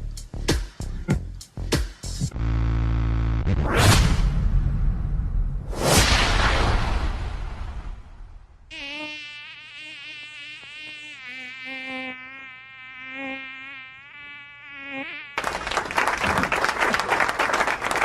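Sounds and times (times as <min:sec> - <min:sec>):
noisy swoosh: 0:02.4 - 0:08.7
buzzing insect drone: 0:08.7 - 0:15.4.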